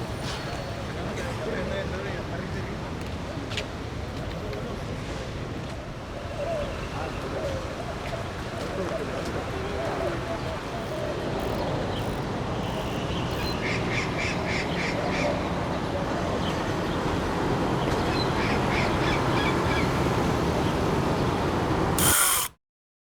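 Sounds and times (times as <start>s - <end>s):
birds calling: 9.0s - 21.4s.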